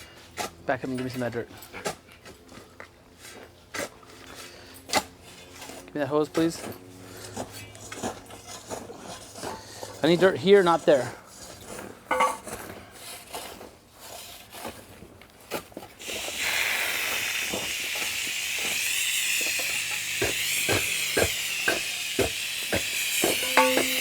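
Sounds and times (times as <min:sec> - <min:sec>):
garden hose spraying water: 0:16.0 - 0:24.0.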